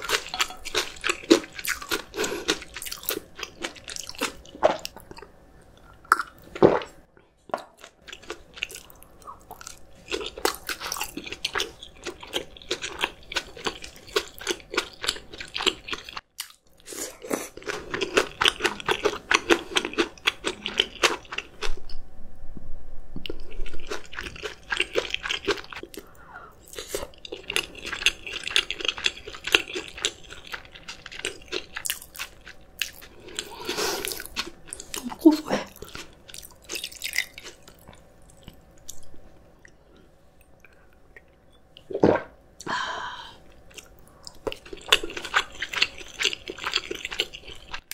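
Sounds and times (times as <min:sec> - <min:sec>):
person chewing crunchy food: 0:00.0 - 0:06.9, 0:07.5 - 0:21.8, 0:23.2 - 0:42.2, 0:43.5 - 0:47.9.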